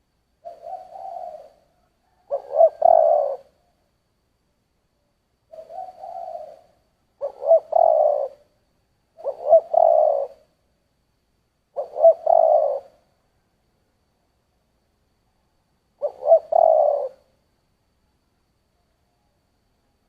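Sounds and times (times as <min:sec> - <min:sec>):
dove cooing: 0:00.4 - 0:03.7, 0:05.5 - 0:08.5, 0:09.2 - 0:10.5, 0:11.7 - 0:13.1, 0:16.0 - 0:17.3.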